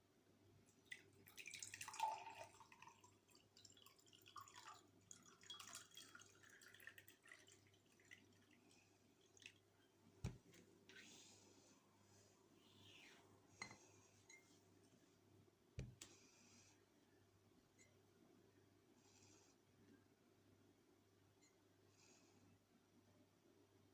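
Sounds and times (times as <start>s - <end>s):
liquid pouring and dripping: 0.7s - 10.6s.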